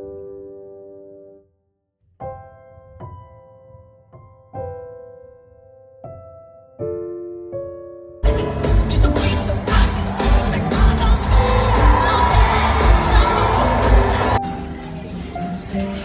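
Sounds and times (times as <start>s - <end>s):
soft piano chords: 0.0s - 1.5s, 2.2s - 9.2s.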